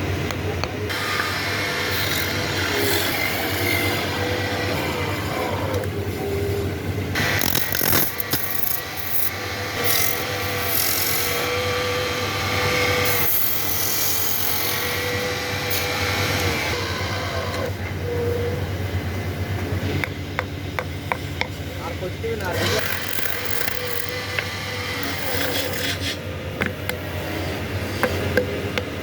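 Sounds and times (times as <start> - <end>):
power tool cutting wood: 0.9 - 5.9, 7.2 - 17.8, 22.4 - 26.2.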